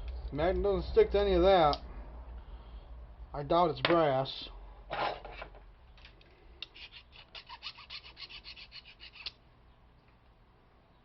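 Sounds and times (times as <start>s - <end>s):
metal being filed by hand: 6.6s - 9.4s.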